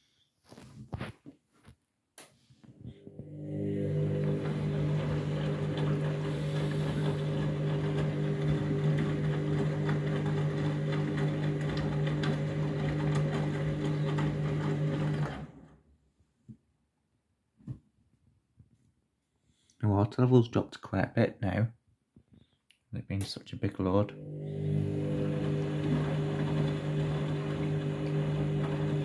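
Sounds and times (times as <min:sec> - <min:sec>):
washing machine drain pump humming: 0:03.0 - 0:15.6, 0:24.1 - 0:29.0.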